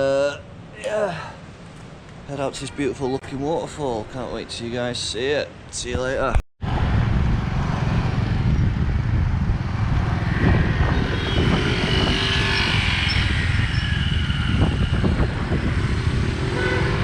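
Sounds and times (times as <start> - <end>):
vehicle road rumble: 6.6 - 17.0.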